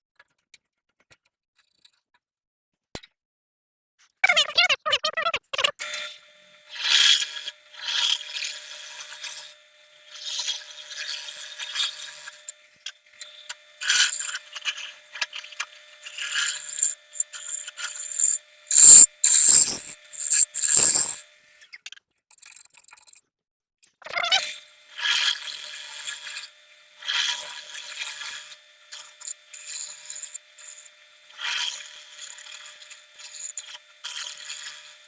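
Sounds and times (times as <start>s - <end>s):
faint steady hum: 5.8s - 21.6s
tool rasping wood: 6.0s - 12.6s, 13.2s - 21.3s, 24.5s - 35.0s.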